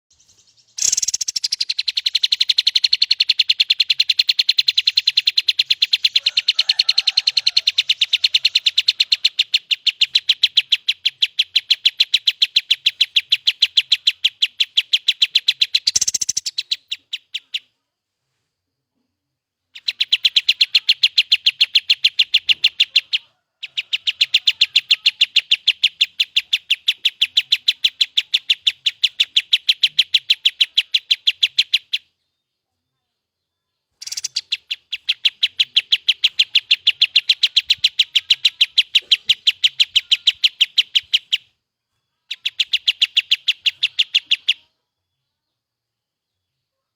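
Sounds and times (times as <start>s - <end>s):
songbird singing high notes: 0.3s - 17.7s, 33.9s - 41.5s, 42.2s - 44.8s.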